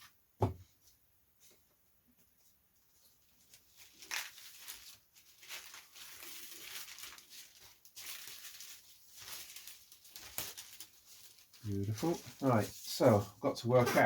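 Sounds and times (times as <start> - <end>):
paper crinkling and rustling: 2.9 - 14.0
sharp crackles: 3.8 - 13.0.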